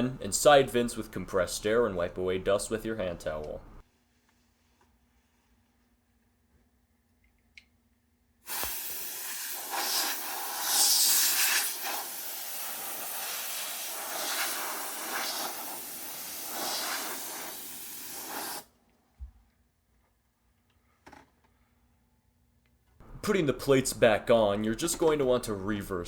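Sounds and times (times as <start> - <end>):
compressed air hissing: 8.5 - 18.7.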